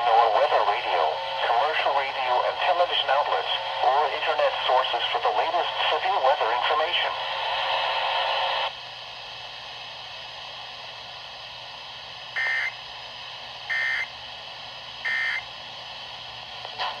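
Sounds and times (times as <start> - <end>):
radio hiss: 0.0 - 8.7, 12.4 - 12.7, 15.0 - 15.5
warbling digital data tones: 12.4 - 12.7.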